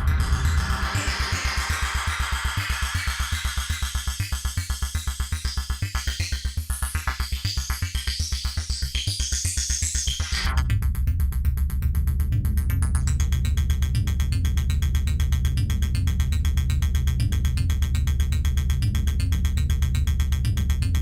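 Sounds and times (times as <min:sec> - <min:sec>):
dense low synth tone: 0:00.0 - 0:04.1
pulsing electronic bass pattern: 0:00.0 - 0:08.6, 0:10.5 - 0:21.0.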